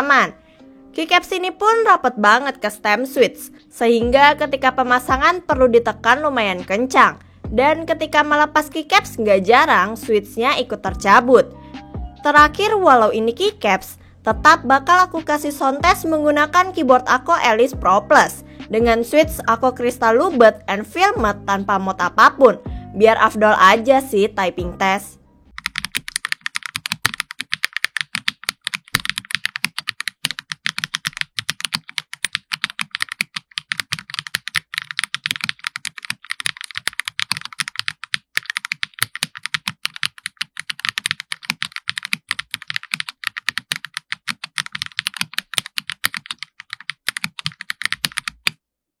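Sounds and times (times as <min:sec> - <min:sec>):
mechanical keyboard typing: 0:25.5 - 0:48.6.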